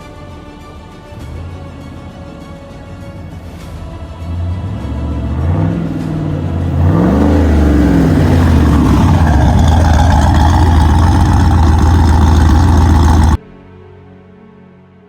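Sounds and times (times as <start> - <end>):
pickup engine revving: 4.6 - 13.4.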